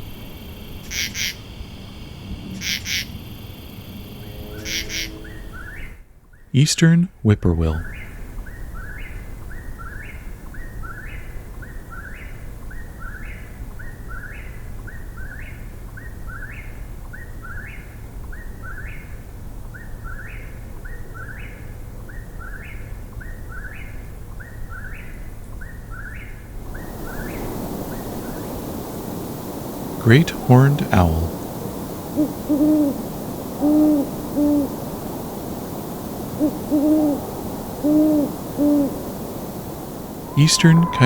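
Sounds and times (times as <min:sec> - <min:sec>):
hiss: 0:26.7 - 0:30.0, 0:31.3 - 0:40.4
bird singing whistled phrase: 0:40.2 - 0:41.0.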